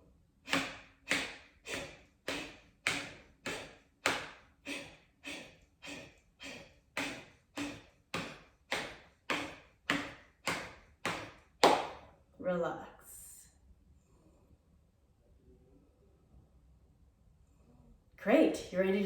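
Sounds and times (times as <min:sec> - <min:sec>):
forceful nasal exhales: 0:00.5 - 0:11.4.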